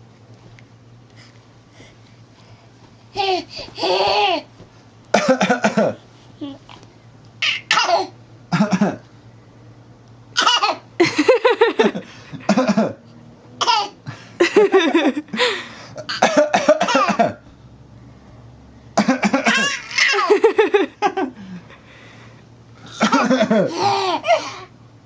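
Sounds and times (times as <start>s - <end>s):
adult coughing: 5.2s - 6.0s, 7.7s - 9.0s, 12.4s - 13.0s, 16.0s - 17.4s, 19.0s - 19.8s, 22.9s - 24.6s
baby coughing: 5.2s - 6.0s, 7.4s - 9.0s, 10.4s - 10.9s, 13.6s - 14.0s, 16.0s - 17.4s, 19.0s - 20.3s
laughter: 11.0s - 12.9s, 14.4s - 15.4s, 20.2s - 21.3s, 23.0s - 23.8s.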